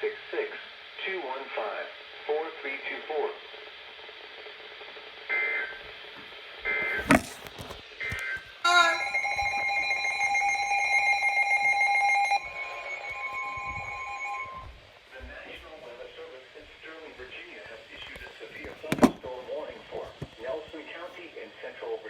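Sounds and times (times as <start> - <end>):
steady alarm tone: 8.7 - 15.0.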